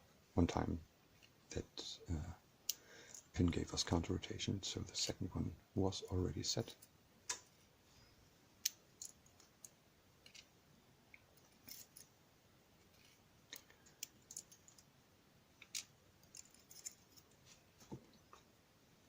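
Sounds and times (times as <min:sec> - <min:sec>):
small metal lock parts clicking: 0:08.6 - 0:10.5, 0:11.4 - 0:12.1, 0:12.9 - 0:14.9, 0:15.6 - 0:17.4.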